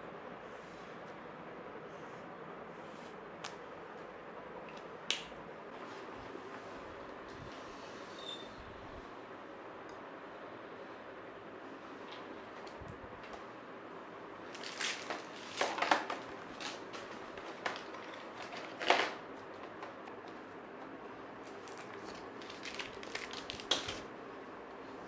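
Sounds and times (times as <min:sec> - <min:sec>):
faint background hum: 0:00.0 - 0:25.0
rustles and crunches of handling: 0:14.4 - 0:24.1.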